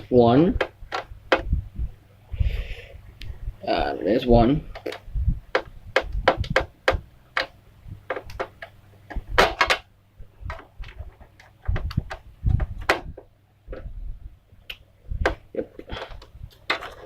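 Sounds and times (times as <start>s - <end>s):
faint low hum: 0.0s - 17.0s
plastic parts handled: 0.6s - 1.6s, 4.6s - 13.9s, 15.2s - 17.0s.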